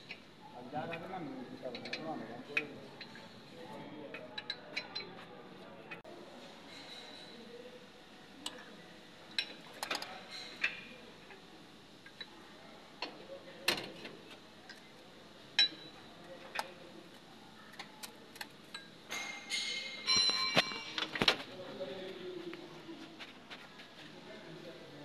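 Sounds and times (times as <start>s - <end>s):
faint steady background noise: 0.0s - 25.0s
hand tools clinking on metal: 18.7s - 21.3s.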